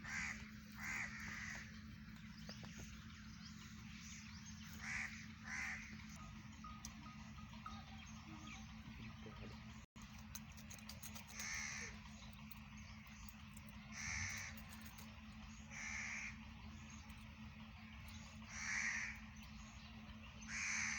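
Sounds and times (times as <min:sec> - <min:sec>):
crow cawing: 0:00.0 - 0:01.7, 0:04.8 - 0:06.0, 0:11.4 - 0:12.0, 0:13.9 - 0:14.6, 0:15.7 - 0:16.4, 0:18.5 - 0:19.2, 0:20.5 - 0:20.9
steady low hum: 0:00.0 - 0:20.9.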